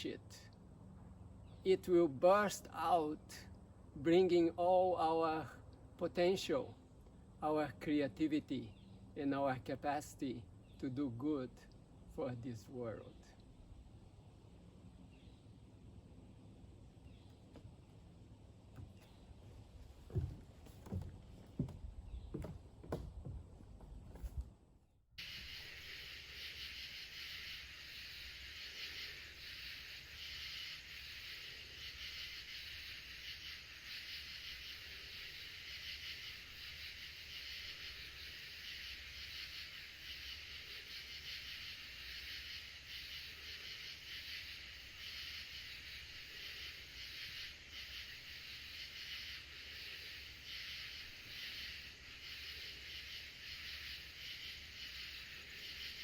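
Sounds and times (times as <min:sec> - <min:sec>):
chorus of calling insects: 0:25.2 - 0:56.0.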